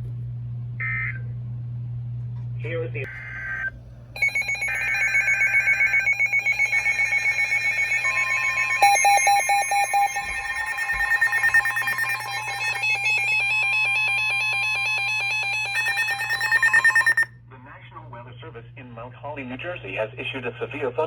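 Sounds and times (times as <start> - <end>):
quick electronic beeps: 4.2 - 17.3
steady alert tone: 4.2 - 17.3.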